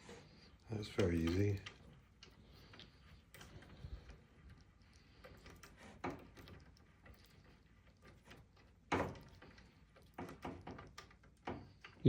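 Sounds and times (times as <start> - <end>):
knocks of wooden chair parts: 8.9 - 12.0.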